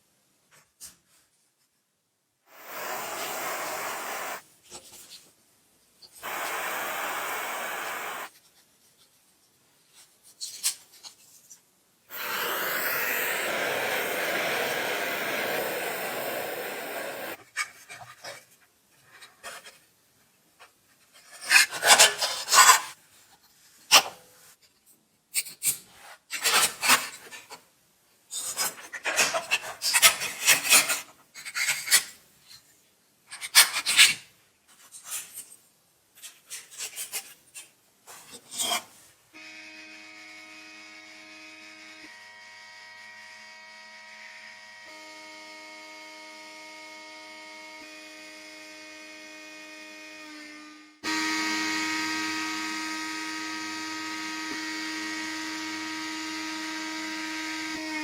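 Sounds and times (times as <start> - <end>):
sanding wood by hand: 2.5 - 4.4, 12.1 - 17.4.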